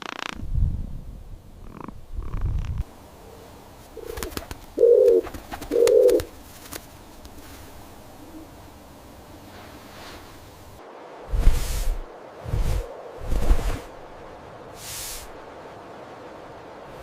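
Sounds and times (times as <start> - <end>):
bird giving low calls: 4.0 - 6.3.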